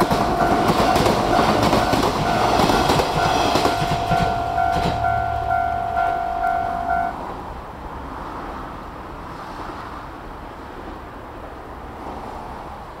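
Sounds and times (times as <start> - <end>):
road traffic noise: 0.0 - 13.0.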